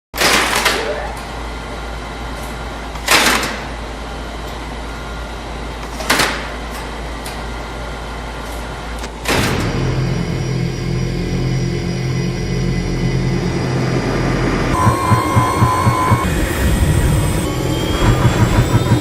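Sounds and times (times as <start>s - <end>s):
steady low hum: 6.5s - 19.0s.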